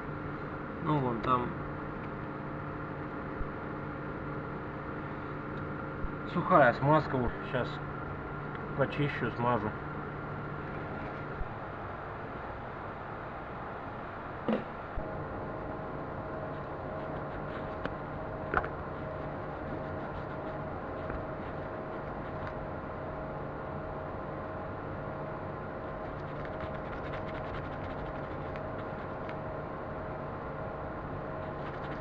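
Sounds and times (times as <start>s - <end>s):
steady mechanical hum: 0.0s - 32.0s.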